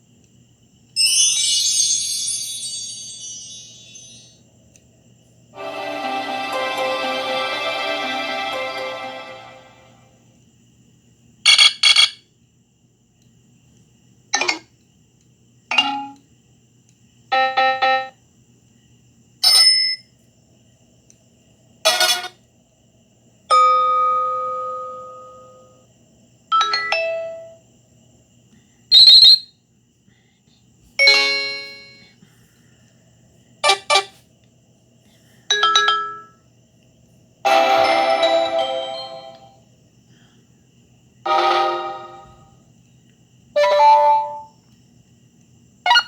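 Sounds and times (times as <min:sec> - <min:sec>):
phone electronic chimes and jingles: 0:01.0 - 0:04.3.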